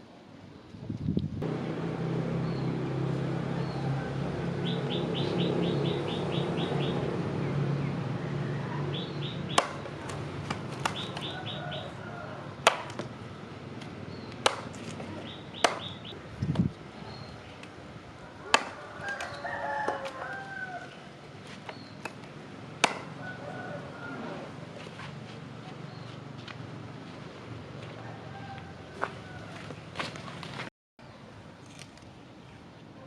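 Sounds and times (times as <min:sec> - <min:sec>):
sharp knocks: 0:09.5 - 0:09.9, 0:15.6 - 0:16.0, 0:22.8 - 0:23.1
bird trilling: 0:10.9 - 0:12.2.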